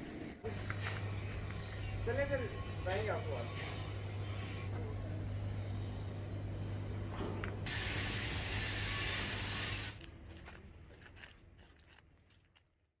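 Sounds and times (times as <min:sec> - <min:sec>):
low machine hum: 0:00.0 - 0:10.0
spraying air hiss: 0:07.7 - 0:10.0.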